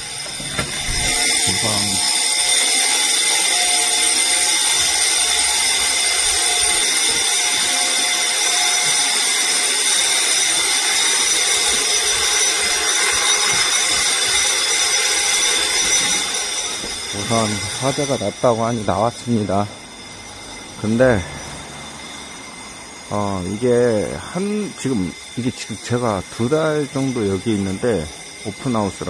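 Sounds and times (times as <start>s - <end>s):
fire alarm ringing: 0.0s - 29.0s.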